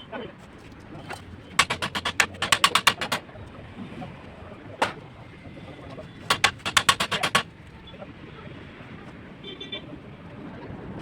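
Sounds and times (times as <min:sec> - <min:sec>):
rapid sharp hammer knocks: 0:01.6 - 0:03.2, 0:06.3 - 0:07.5.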